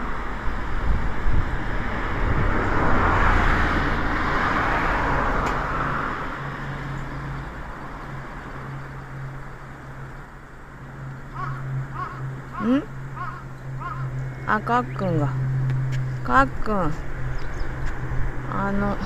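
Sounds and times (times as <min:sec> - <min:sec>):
vehicle passing by: 0:00.0 - 0:19.0
steady low hum: 0:06.1 - 0:19.0.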